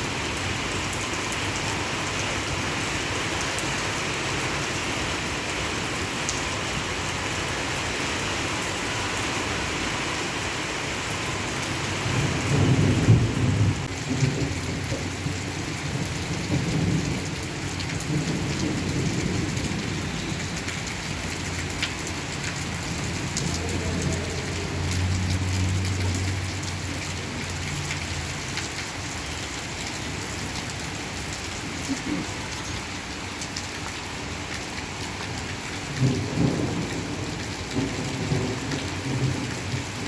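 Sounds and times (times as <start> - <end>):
heavy rain falling: 0.0 - 40.0
thunder rumbling: 12.0 - 20.5, 36.0 - 40.0.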